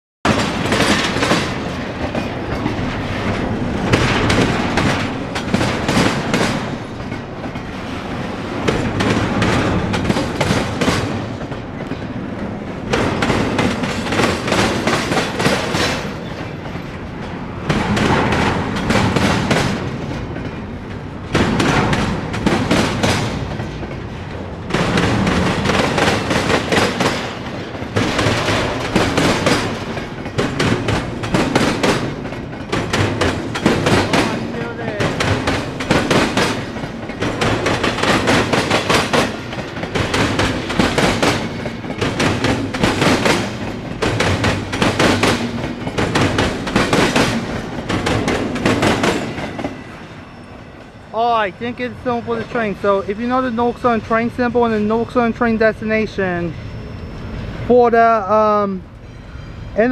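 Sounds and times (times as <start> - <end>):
wheels clicking over rail joints: 0.3 - 50.1
freight train rolling past: 0.3 - 59.9.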